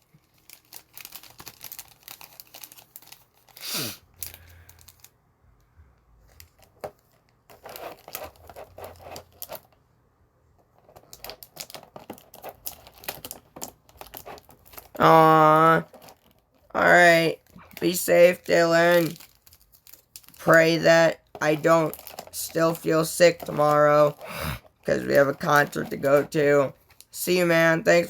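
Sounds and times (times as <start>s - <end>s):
light crinkling: 0.0s - 5.1s, 15.7s - 28.0s.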